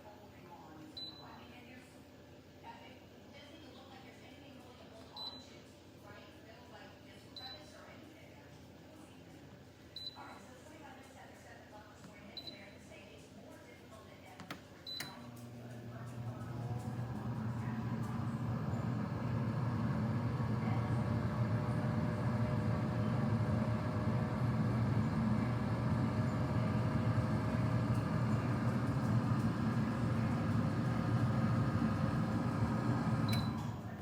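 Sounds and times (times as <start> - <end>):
air fryer fan whirring: 14.9 - 34.0.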